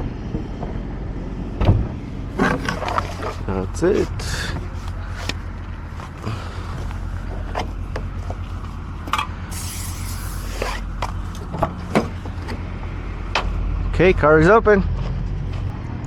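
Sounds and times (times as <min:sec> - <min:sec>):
car engine idling: 0:00.0 - 0:15.8
brief hiss: 0:09.5 - 0:10.6.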